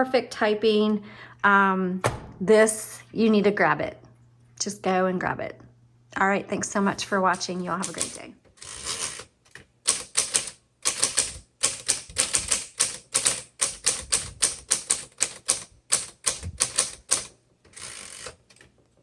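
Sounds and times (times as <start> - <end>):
typewriter keystrokes clacking: 7.4 - 9.2, 9.9 - 18.3.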